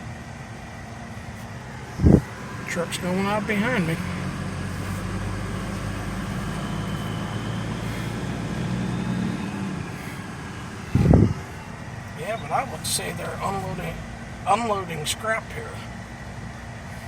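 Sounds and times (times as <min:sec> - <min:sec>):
truck engine running: 0:00.0 - 0:17.0.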